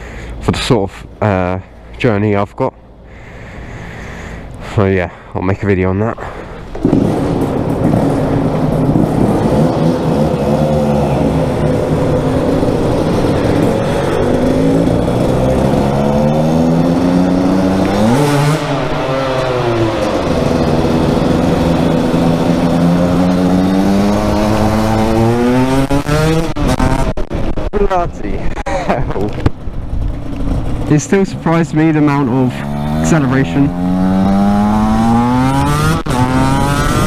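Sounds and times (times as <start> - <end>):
two-stroke engine accelerating: 6.8 - 28.0, 28.9 - 37.0.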